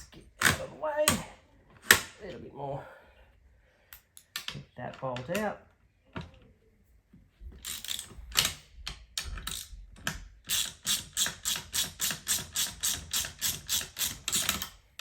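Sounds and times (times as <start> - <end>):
ratchet wrench clicking: 7.6 - 8.5, 9.4 - 14.8.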